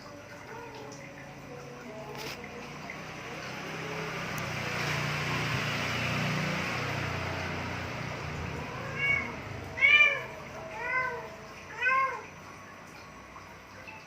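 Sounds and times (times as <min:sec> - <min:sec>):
vehicle engine passing: 0:01.2 - 0:11.7.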